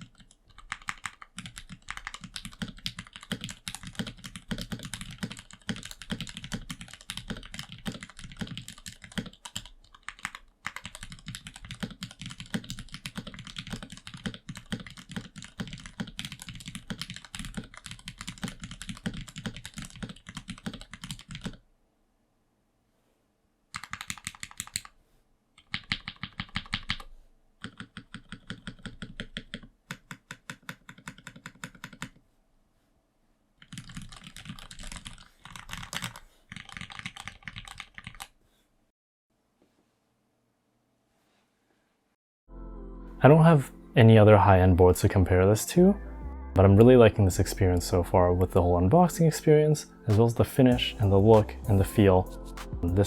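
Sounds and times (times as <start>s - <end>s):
fast typing on mechanical keyboard: 0.0s - 21.6s, 23.7s - 25.0s, 25.6s - 32.2s, 33.6s - 38.4s.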